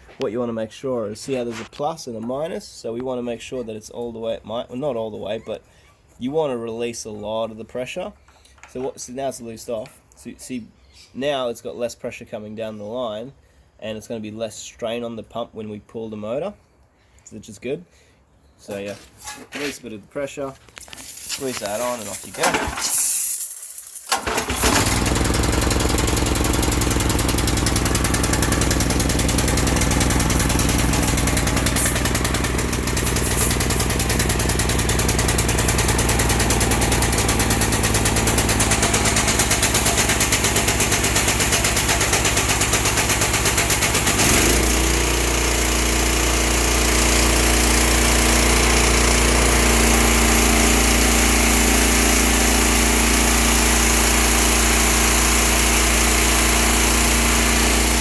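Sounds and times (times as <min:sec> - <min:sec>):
pressure washer engine running: 0:21.0 - 0:23.0, 0:24.1 - 0:58.0.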